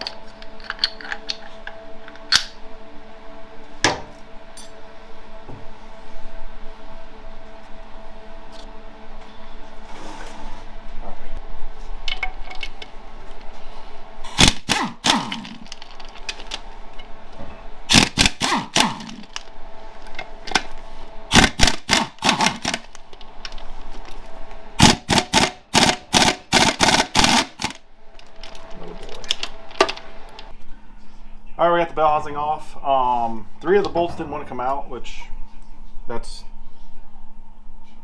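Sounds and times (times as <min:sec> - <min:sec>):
impact wrench hammering: 0:24.8 - 0:27.8
tool winding down whine: 0:24.8 - 0:27.8.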